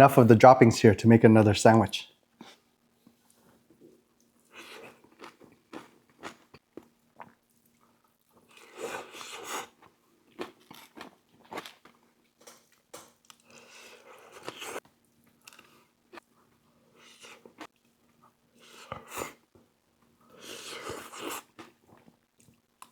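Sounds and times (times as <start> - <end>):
person chewing and crunching: 4.4 - 14.8, 20.3 - 22.9.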